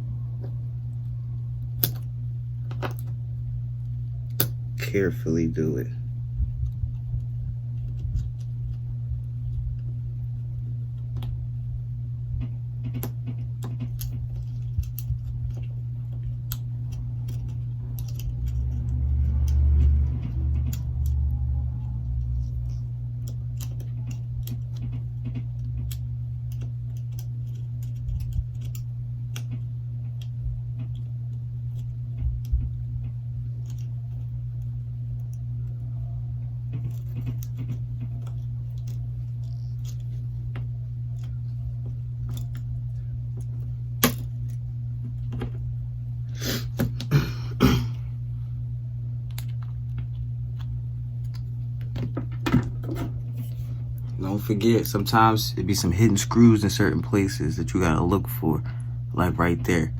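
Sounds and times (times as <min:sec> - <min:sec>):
low rumble: 0:00.0 - 0:12.8, 0:14.0 - 0:26.9
steady low hum: 0:00.0 - 0:59.9.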